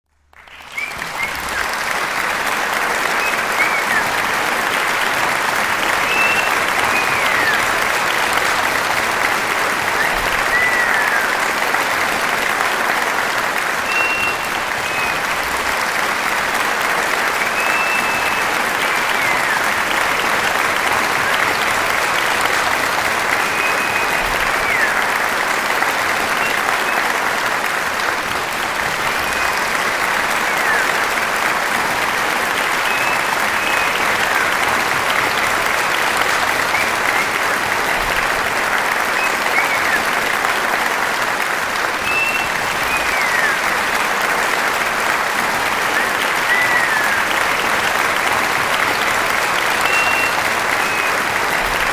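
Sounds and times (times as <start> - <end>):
large crowd applauding: 0.0 - 51.9
short whistles: 0.4 - 11.6, 13.9 - 15.6, 16.3 - 25.3, 29.0 - 38.1, 38.8 - 40.4, 42.0 - 44.5, 45.8 - 51.9.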